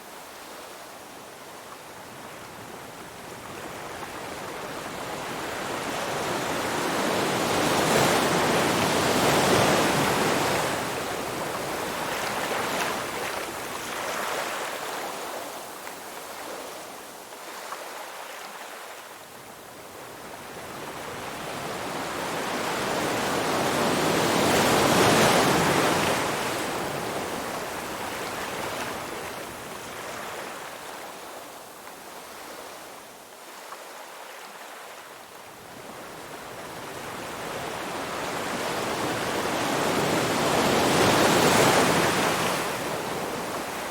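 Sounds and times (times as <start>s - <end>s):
ocean waves washing onto shore: 0.0s - 43.9s.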